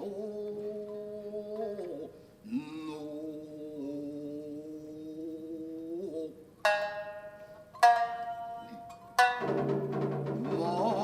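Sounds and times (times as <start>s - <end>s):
plucked shamisen notes: 6.6s - 11.0s.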